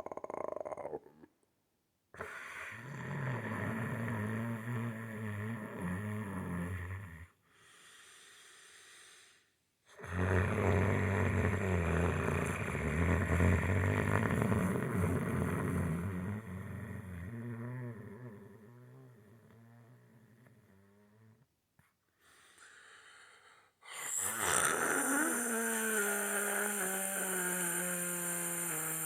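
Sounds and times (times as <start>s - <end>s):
man snoring loudly: 2.2s - 7.3s, 9.9s - 21.3s, 23.9s - 29.0s
quiet breath: 2.2s - 11.5s, 12.2s - 29.0s.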